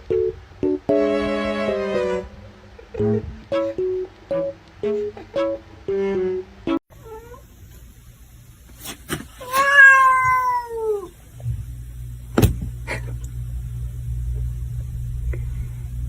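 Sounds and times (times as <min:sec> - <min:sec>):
steady low rumble: 0:02.2 - 0:04.6, 0:11.3 - 0:16.0
cat meowing: 0:09.4 - 0:11.1.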